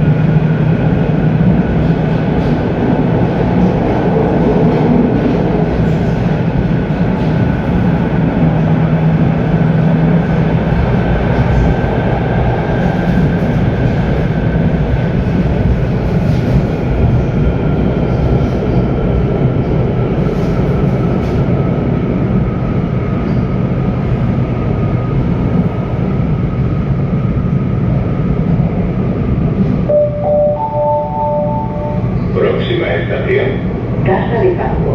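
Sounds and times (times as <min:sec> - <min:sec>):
wheel and track rumble: 0:00.0 - 0:29.9
announcement chime: 0:29.9 - 0:32.1.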